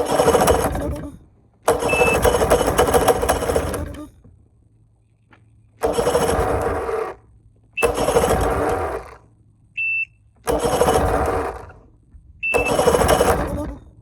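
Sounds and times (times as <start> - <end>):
outboard motor cranking: 0.0 - 4.4, 5.8 - 9.4, 10.3 - 14.0
high beep: 9.8 - 10.2.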